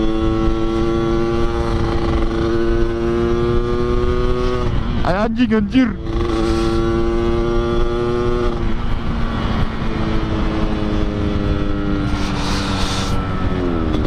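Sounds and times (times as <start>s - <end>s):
motorcycle engine running: 5.8s - 14.0s.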